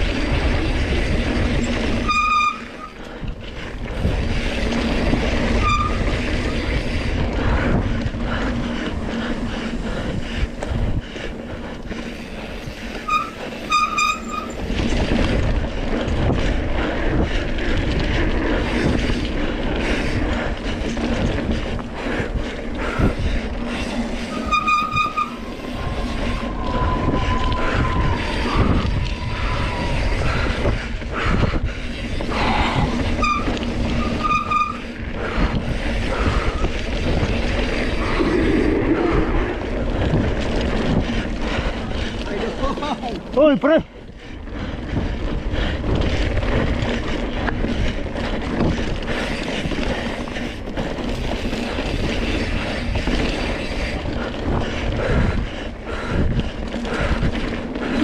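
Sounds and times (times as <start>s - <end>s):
bike tyres and rattle on trail: 0.0s - 58.0s
high squeals: 1.6s - 3.0s, 5.4s - 6.3s, 13.0s - 14.6s, 24.3s - 30.7s, 32.3s - 35.0s.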